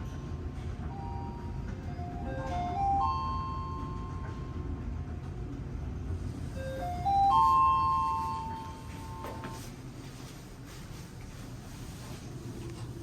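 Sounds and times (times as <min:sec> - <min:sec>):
rising four-note elevator chime: 0:06.6 - 0:09.6.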